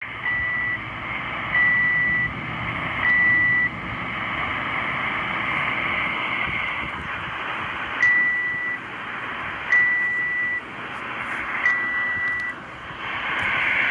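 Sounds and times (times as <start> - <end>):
radio band noise hiss: 0.0 - 13.9
morse code beeps: 0.2 - 0.9, 1.5 - 2.3, 3.0 - 3.7, 8.0 - 8.9, 9.7 - 10.7, 11.6 - 12.6.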